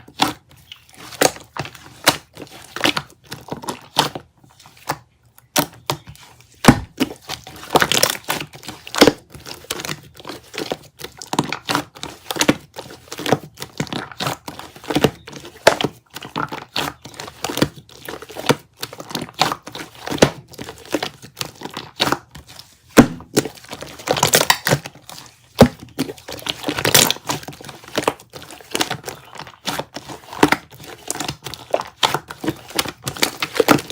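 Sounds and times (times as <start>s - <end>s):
slime crackling and popping: 22.9s - 33.9s.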